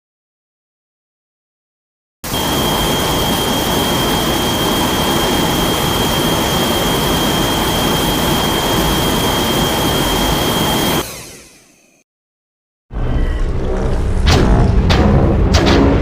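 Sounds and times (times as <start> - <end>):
loud rushing blast: 13.3 - 16.0.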